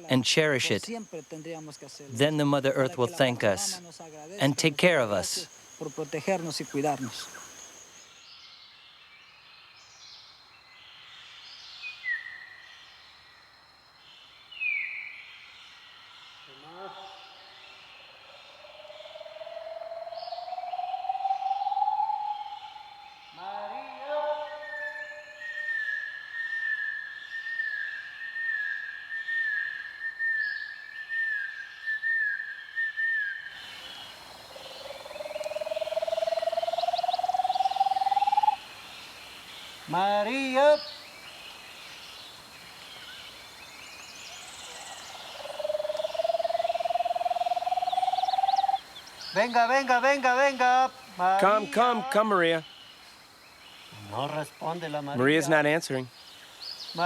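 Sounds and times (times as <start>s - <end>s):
insects chorus: 0.0s - 57.0s
bird descending whistled calls: 20.4s - 33.5s.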